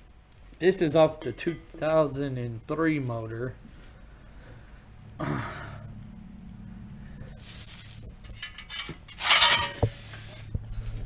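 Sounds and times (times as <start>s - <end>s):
steady low hum: 0.0s - 11.0s
metal parts clinking and scraping: 7.5s - 10.2s
rattling clatter: 8.2s - 10.0s.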